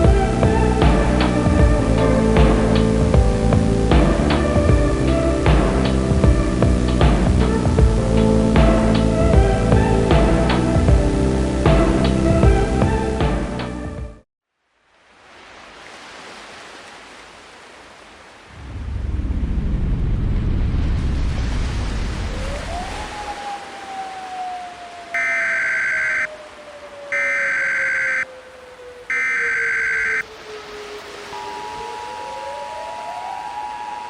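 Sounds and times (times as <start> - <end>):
deep rumble: 0.0 - 13.0, 18.6 - 22.4
buzzing digital data tones: 25.2 - 26.3, 27.2 - 28.2, 29.1 - 30.2.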